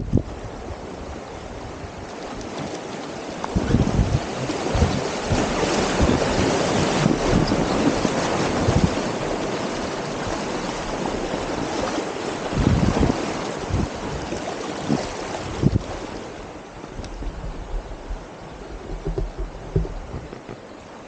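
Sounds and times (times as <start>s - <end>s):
creek water rushing: 0.0s - 21.0s
low knocks: 18.7s - 20.6s.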